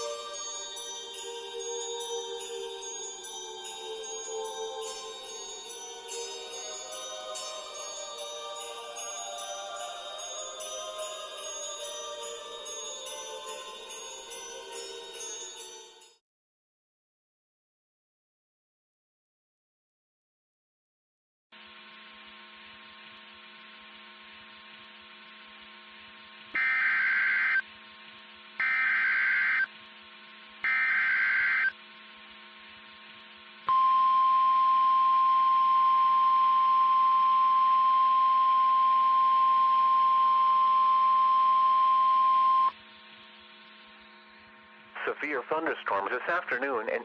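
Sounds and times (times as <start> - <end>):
warbling data bursts: 26.6 - 27.6, 28.6 - 29.7, 30.6 - 31.7
steady radio hum: 43.4 - 47.0.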